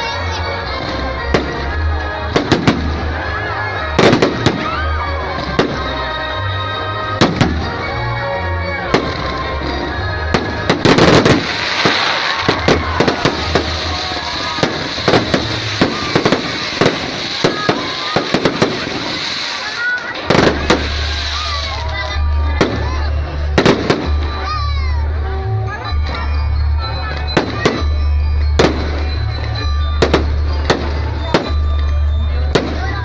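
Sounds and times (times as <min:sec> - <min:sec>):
fireworks bangs and crackle: 0:00.0 - 0:33.0.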